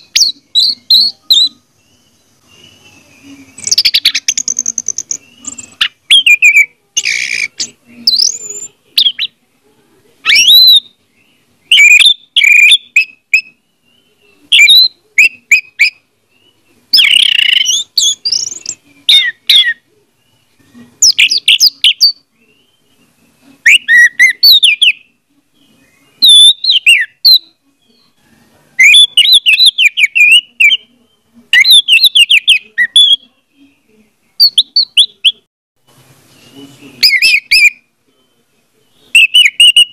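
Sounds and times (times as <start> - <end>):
thrush singing whistled notes: 0.0 - 9.4, 10.3 - 28.2, 28.8 - 30.9, 31.6 - 35.5, 36.1 - 39.9.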